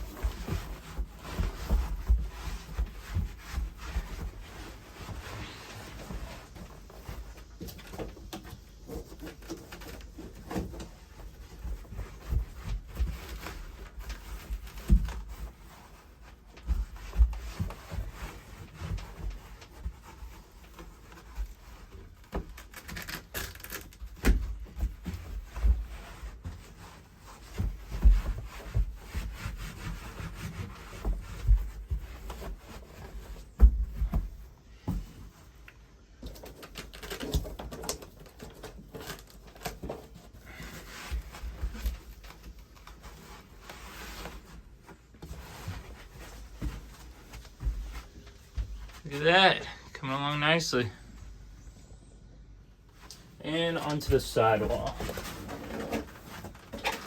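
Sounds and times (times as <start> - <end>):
thumps and knocks: 16.5 - 35.4.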